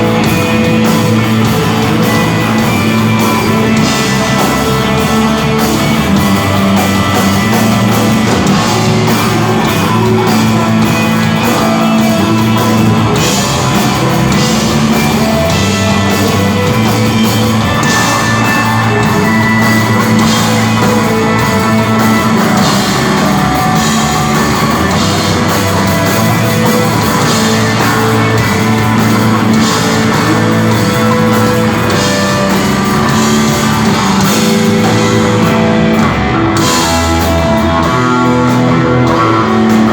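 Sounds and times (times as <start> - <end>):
live rock band playing: 0.0 - 39.9.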